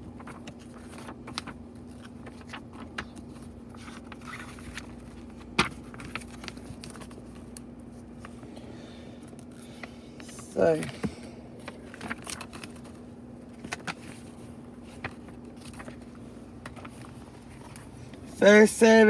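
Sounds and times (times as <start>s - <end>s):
paper pages rustling: 0.0s - 8.4s, 11.6s - 18.2s.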